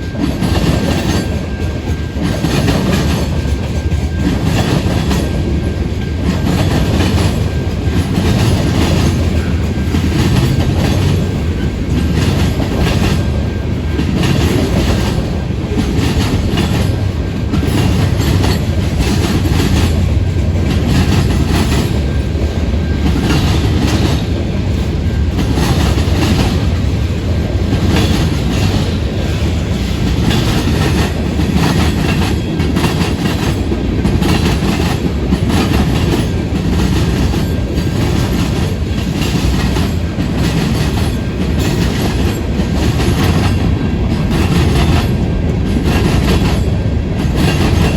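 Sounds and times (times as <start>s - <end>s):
freight train rumbling by: 0.0s - 47.9s
wheels clicking over rail joints: 0.1s - 47.9s.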